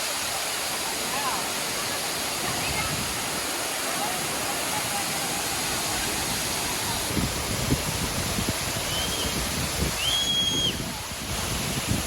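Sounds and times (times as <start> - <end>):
waterfall roaring: 0.0 - 12.0
high whistled notes: 10.0 - 10.8.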